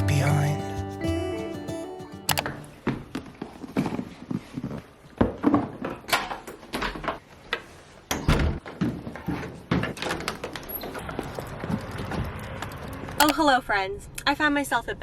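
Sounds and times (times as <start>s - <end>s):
objects knocking and thumping: 2.8s - 7.7s, 8.4s - 13.2s.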